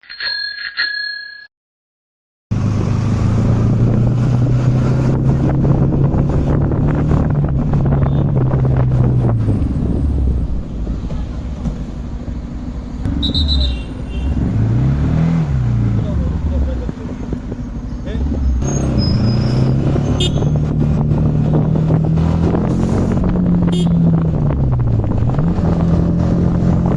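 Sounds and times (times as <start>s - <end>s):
wind noise: 2.6s - 11.1s, 16.8s - 26.9s
motorcycle engine running: 15.7s - 18.6s.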